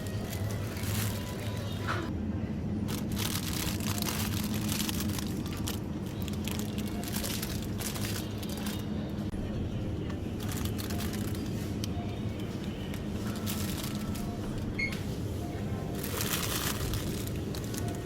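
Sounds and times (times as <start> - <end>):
plastic packaging crinkling: 2.9 - 9.0, 10.4 - 11.8, 13.0 - 14.6, 15.9 - 18.0.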